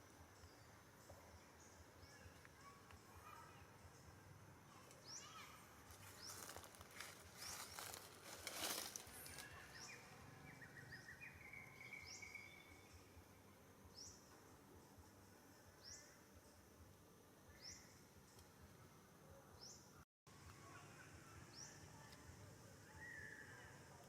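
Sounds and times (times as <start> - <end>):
bird chirping: 0.0 - 16.8, 17.4 - 20.0
rustling: 5.9 - 9.7.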